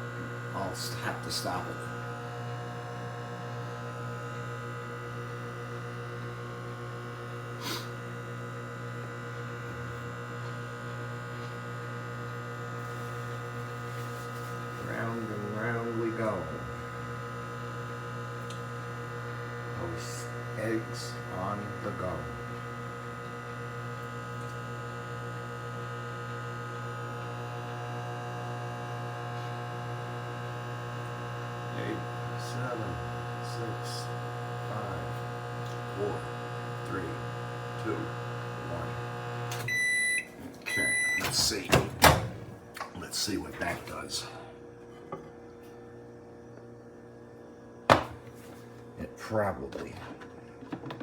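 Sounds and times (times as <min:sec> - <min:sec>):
microwave oven humming: 0:00.0 - 0:51.0.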